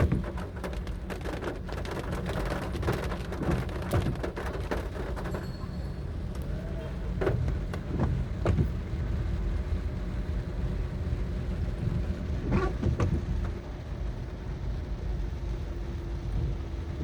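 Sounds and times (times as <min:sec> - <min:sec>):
heavy rain: 0:00.0 - 0:17.0
road traffic rumble: 0:00.0 - 0:17.0.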